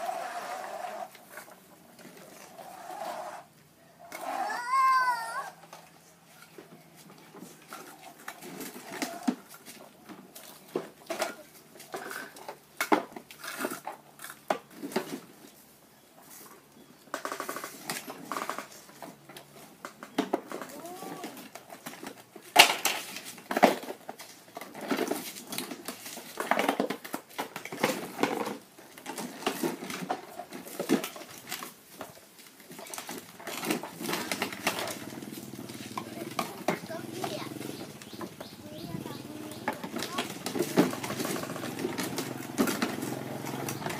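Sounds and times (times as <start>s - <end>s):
small hard objects clattering: 17.1s - 43.9s.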